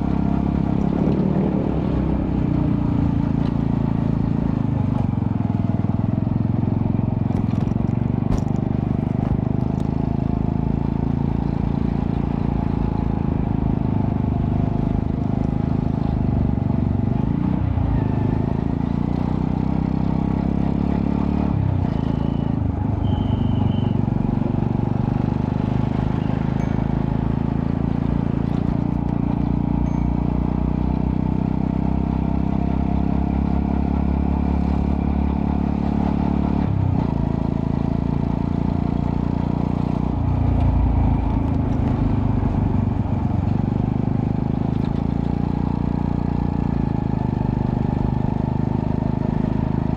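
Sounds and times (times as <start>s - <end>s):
motorcycle engine running: 0.0s - 49.9s.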